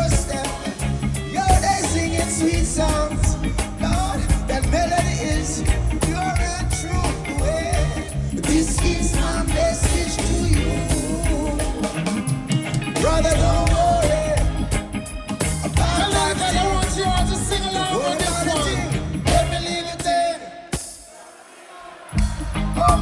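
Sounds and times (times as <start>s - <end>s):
person singing: 0.0s - 20.7s, 21.7s - 23.0s
live reggae band: 0.0s - 23.0s.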